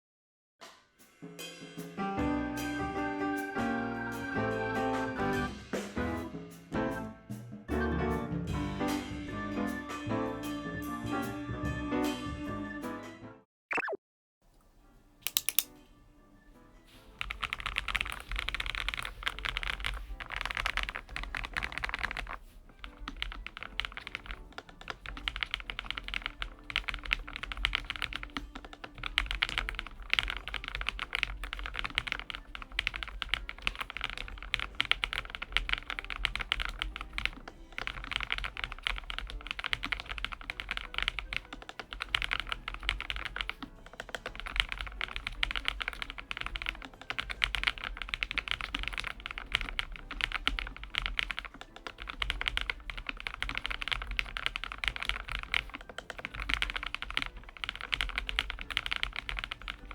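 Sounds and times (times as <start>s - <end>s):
background music: 0.9s - 13.5s, 14.5s - 59.9s
mechanical keyboard typing: 15.2s - 15.7s, 17.0s - 59.9s.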